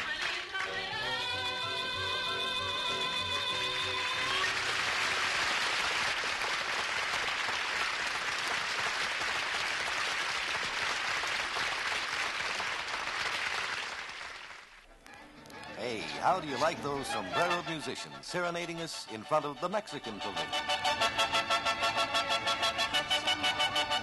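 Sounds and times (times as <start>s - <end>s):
audience clapping: 0.0s - 1.0s, 4.0s - 14.9s.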